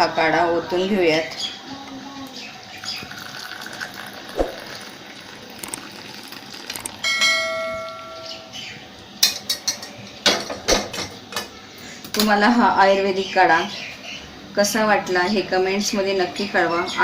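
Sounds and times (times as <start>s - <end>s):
ringing bell-like clink: 7.0s - 8.4s.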